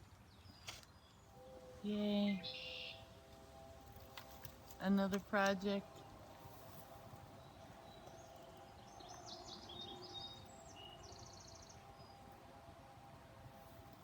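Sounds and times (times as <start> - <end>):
small birds chirping: 0.0 - 12.6
low steady hum: 0.0 - 14.0
bird trill: 1.2 - 3.9, 4.8 - 12.3.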